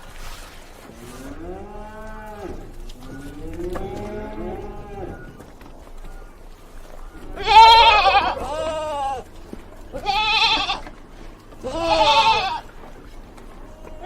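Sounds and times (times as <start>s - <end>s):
cow mooing: 0.8s - 5.6s, 7.4s - 12.8s.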